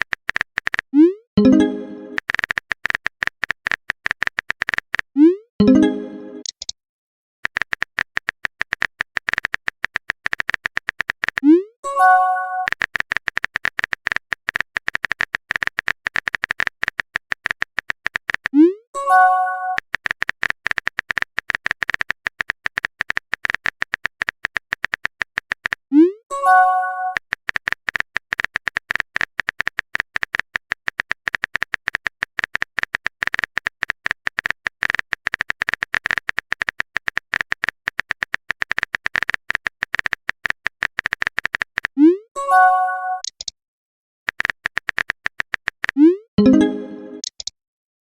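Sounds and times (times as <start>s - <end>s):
phone keyboard typing clicks: 0.0s - 6.8s, 7.4s - 11.6s, 12.6s - 18.6s, 19.7s - 25.9s, 26.5s - 42.0s, 43.2s - 43.5s, 44.3s - 47.5s
message sent pop and chime: 1.4s - 2.2s, 5.6s - 6.5s, 26.3s - 27.2s, 42.4s - 43.3s, 46.4s - 47.3s.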